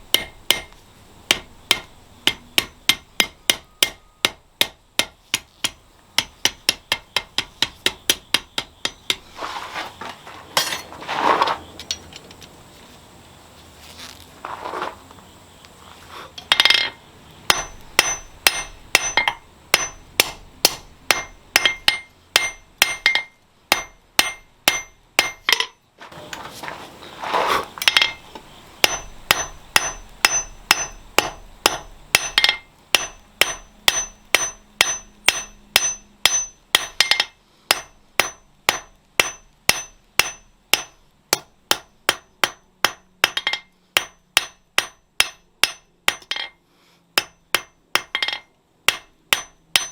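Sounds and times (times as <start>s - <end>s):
hammer striking steel on anvil: 0.1s - 9.3s, 16.4s - 25.8s, 27.8s - 28.2s, 28.8s - 46.6s, 47.2s - 49.9s.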